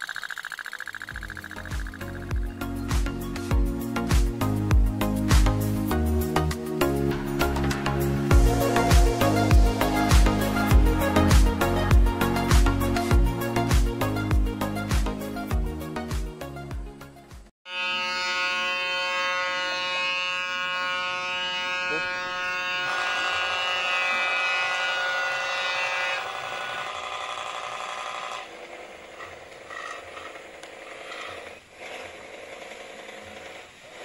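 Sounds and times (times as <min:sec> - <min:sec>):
toy steam boat engine buzzing: 0:00.0 - 0:02.5, 0:17.7 - 0:34.0.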